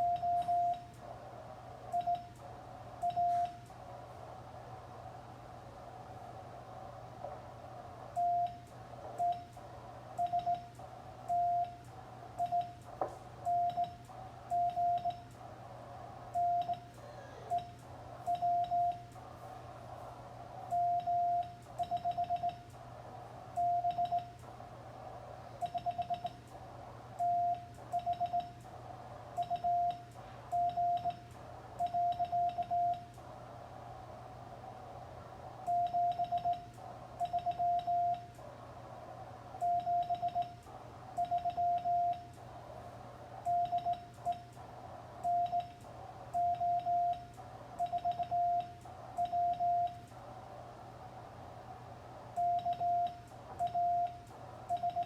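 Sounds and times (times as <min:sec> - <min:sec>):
morse code tone: 0:00.0 - 0:00.8, 0:41.2 - 0:42.2, 0:52.4 - 0:55.0
low hum and hiss: 0:00.0 - 0:55.0.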